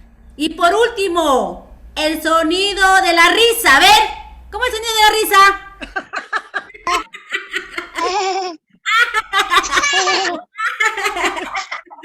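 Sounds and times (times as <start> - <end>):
woman laughing: 5.8 - 12.0.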